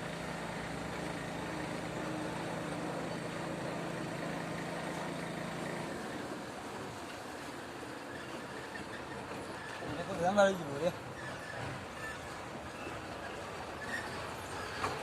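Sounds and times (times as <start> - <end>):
engine low hum: 0.0 - 8.0.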